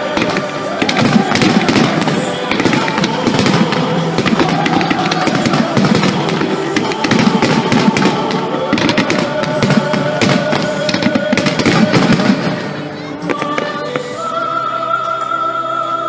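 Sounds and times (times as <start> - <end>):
fireworks crackling: 0.0 - 14.2
music over loudspeakers: 0.0 - 16.0.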